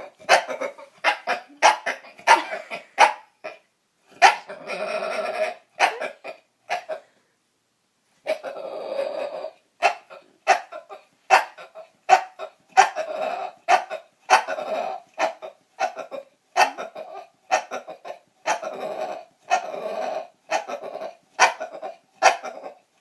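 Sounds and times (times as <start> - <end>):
dog drawn-out calls: 4.2 - 7.1, 8.3 - 22.9
dog grunting: 4.4 - 7.1, 8.3 - 22.8.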